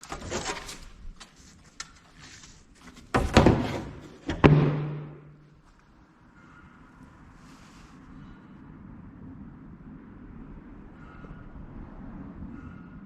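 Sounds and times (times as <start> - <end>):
sharp knocks and clatters: 2.8 - 5.5
heavy thuds: 3.1 - 5.5.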